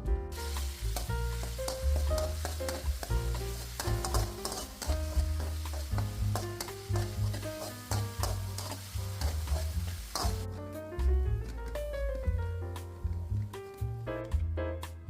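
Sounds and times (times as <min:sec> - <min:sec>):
background piano music: 0:00.0 - 0:15.0
food sizzling in a frying pan: 0:00.3 - 0:10.6
spatula scraping a pan: 0:00.9 - 0:10.5.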